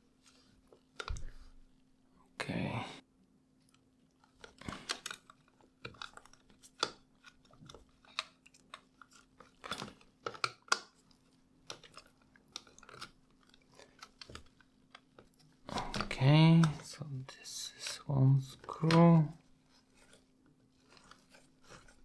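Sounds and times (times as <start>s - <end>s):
plastic clicks taps and scrapes: 3.7s - 16.9s.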